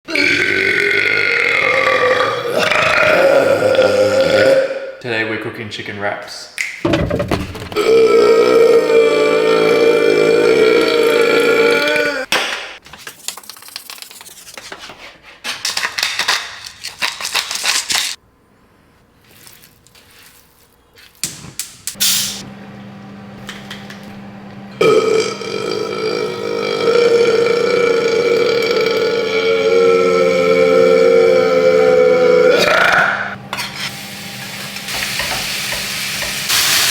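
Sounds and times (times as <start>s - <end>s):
person belching: 0.1s - 5.0s, 7.8s - 12.3s, 24.8s - 33.4s.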